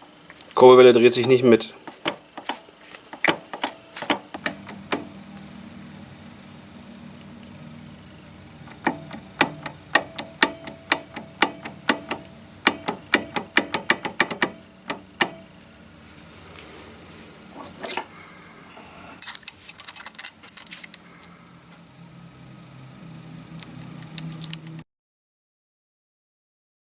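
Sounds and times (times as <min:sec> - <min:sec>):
short jangling rattle: 0:19.2 - 0:21.1.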